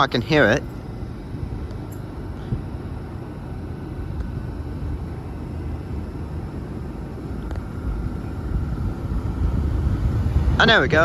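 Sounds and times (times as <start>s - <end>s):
faint steady whine: 0.0s - 11.0s
train diesel engines rumbling: 0.0s - 11.0s.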